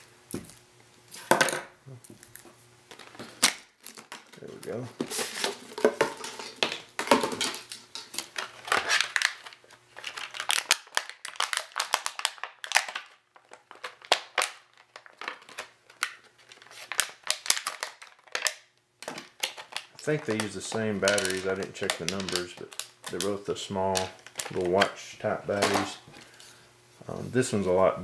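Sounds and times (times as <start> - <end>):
packaging crinkling and rustling: 2.2 - 26.5.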